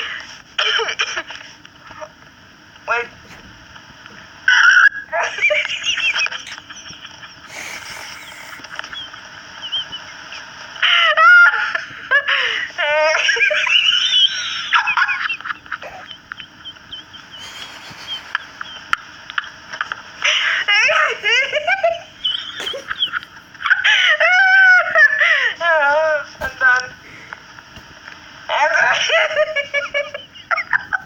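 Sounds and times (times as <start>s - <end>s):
person laughing hard: 4.5s - 18.8s, 20.3s - 27.3s, 28.6s - 31.0s.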